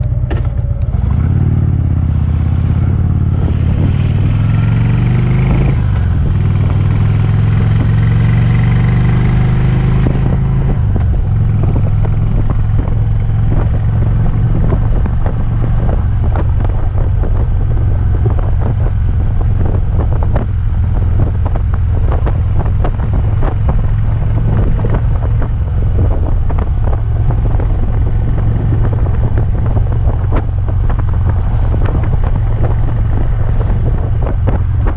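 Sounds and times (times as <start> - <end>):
motorcycle engine running: 0.0 - 34.9
irregular engine ticking: 10.7 - 34.9.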